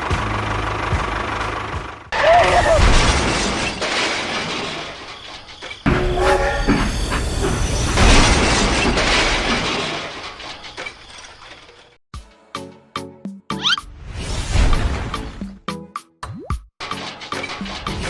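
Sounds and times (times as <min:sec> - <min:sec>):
train rumbling past: 0:05.6 - 0:11.2
train horn: 0:05.9 - 0:09.6.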